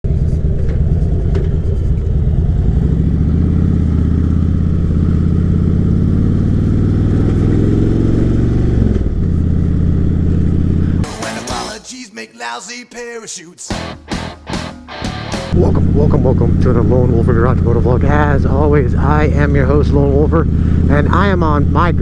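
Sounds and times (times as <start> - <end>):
motorcycle engine revving: 0.0 - 11.4, 15.3 - 22.0.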